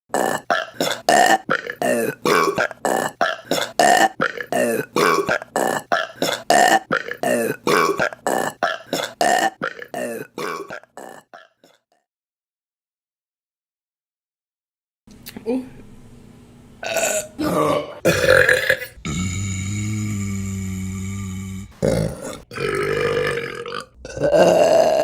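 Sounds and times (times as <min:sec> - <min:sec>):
woman burping: 0:00.1 - 0:11.8, 0:16.8 - 0:19.4, 0:21.9 - 0:25.0.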